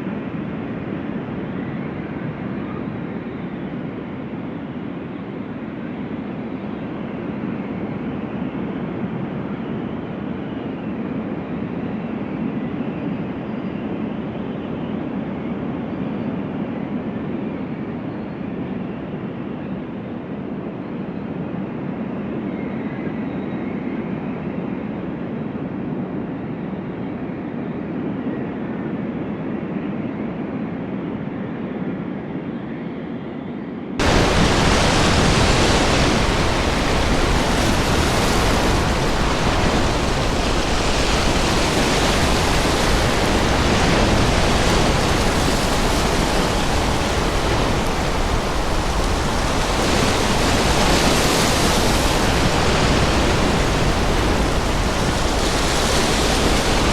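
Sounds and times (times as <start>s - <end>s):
sea surf breaking: 34.0s - 56.9s
storm wind: 34.0s - 56.9s.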